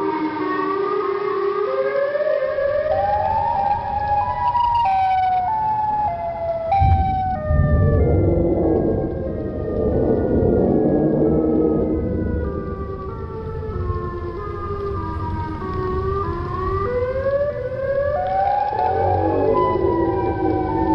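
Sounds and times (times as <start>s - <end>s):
warning siren stepping in pitch: 0.0s - 20.9s
low rumble: 5.4s - 20.9s.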